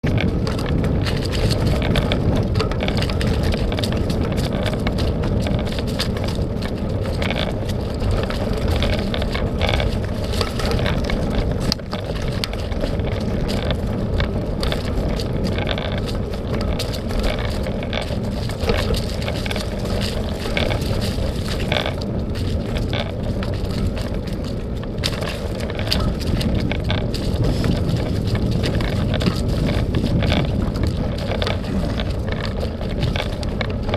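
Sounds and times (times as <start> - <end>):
bicycle tyres rumbling on dirt: 0.0 - 33.9
bike clicks and rattles: 0.0 - 33.9.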